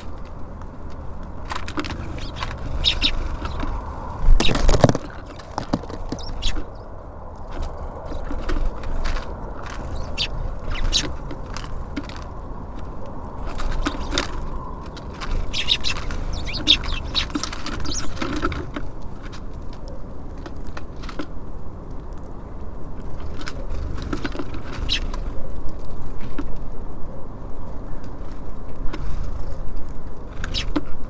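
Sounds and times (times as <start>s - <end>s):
steady low rumble: 0.0s - 20.4s
birds pecking at feeder: 0.0s - 26.8s, 27.4s - 31.0s.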